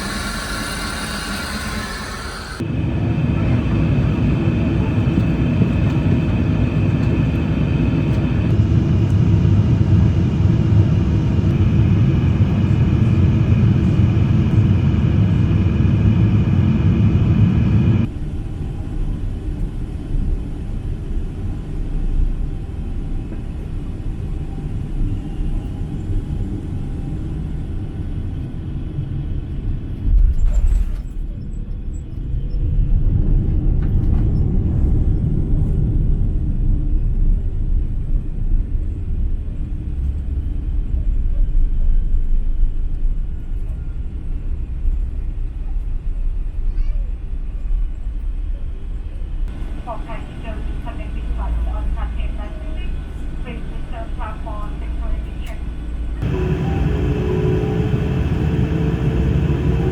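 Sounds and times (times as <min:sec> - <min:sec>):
aircraft cabin engine rumble: 0:00.0 - 0:18.1, 0:49.5 - 0:59.9.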